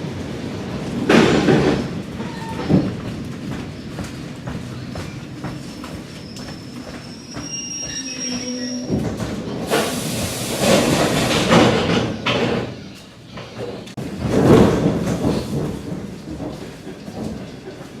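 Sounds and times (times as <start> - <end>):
train wheels on rails: 0.0 - 18.0
faint high squeal: 6.2 - 8.9.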